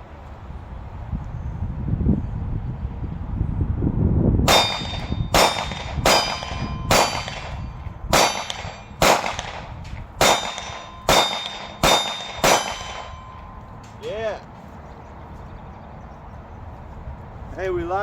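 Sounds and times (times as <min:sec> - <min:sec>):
pistol shots ringing: 0:04.5 - 0:14.0.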